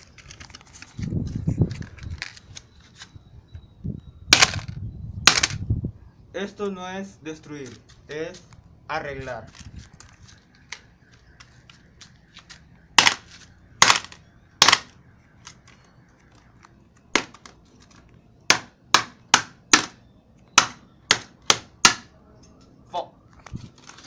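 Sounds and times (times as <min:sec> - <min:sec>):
hard blows striking phone: 0:13.8 - 0:14.9, 0:18.5 - 0:20.0, 0:20.6 - 0:22.1.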